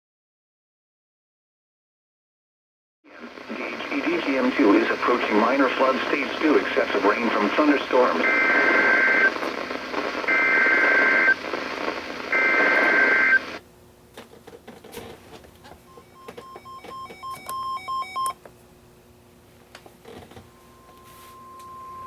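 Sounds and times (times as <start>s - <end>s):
broadcast hiss: 3.1s - 13.6s
warbling two-tone data bursts: 12.3s - 13.6s.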